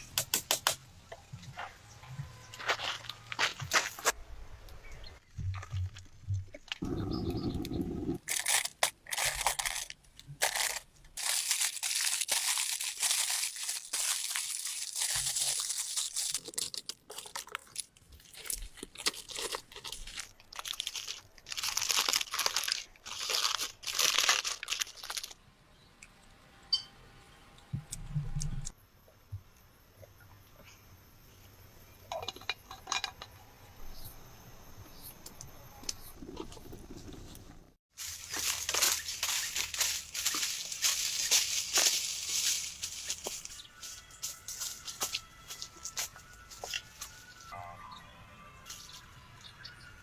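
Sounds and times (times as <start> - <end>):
dry material crunching: 8.2 - 25.4, 37.9 - 47.6.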